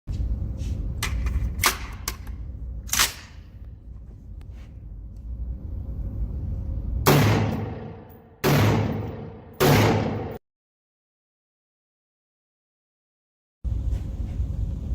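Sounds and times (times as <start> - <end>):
gunshots with echoing tail: 7.0 - 10.4.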